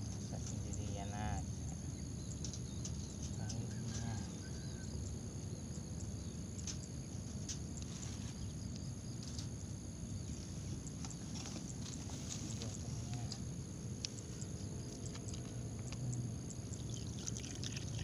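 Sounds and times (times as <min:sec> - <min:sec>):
faint bird calls: 0:00.4 - 0:05.1, 0:10.4 - 0:15.9.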